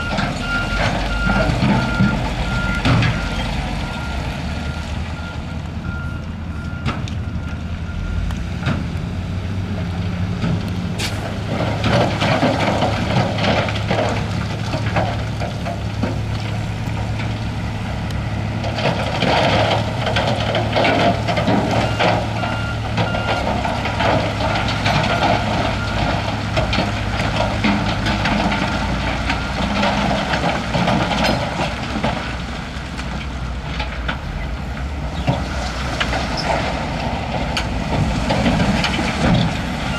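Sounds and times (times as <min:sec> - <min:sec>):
reversing alarm beeping: 0:00.0 - 0:08.2, 0:21.7 - 0:23.6
heavy diesel machinery running: 0:00.0 - 0:39.9
rock and gravel grinding: 0:09.8 - 0:39.9.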